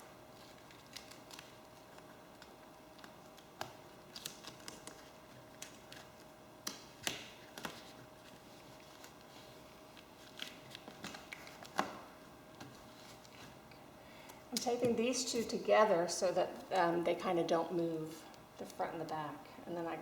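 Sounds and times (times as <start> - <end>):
tape crinkling: 0.0 - 15.5
tape rustling and clicking: 0.0 - 15.5.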